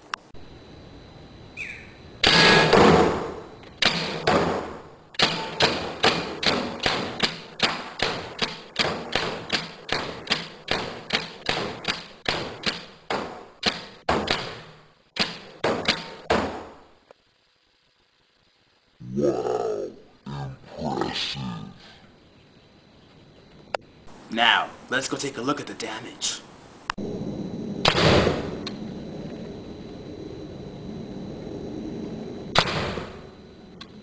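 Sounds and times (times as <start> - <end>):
loud burst of noise: 2.2 - 7.3, 26.8 - 34.0
paintball gun shots: 2.2 - 16.8, 27.8 - 28.6, 32.6 - 33.2.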